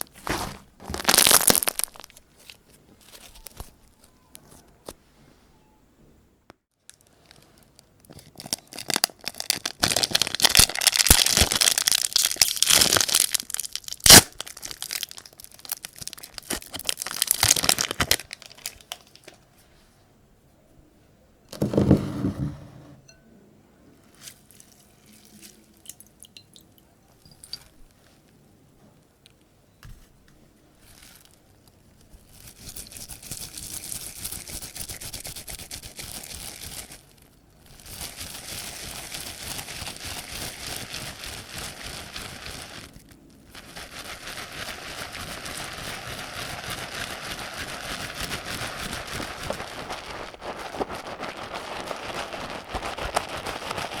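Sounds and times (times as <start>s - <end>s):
slime crackling and scraping: 0.0s - 4.0s, 32.1s - 54.0s.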